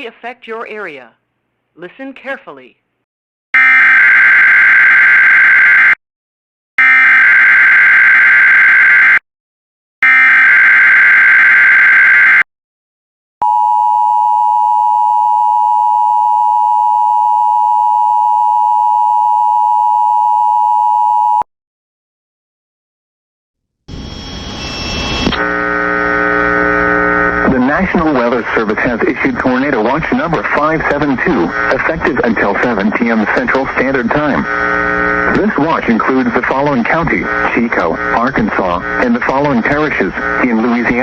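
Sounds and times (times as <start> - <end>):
screechy digital header bursts: 23.9 - 25.4.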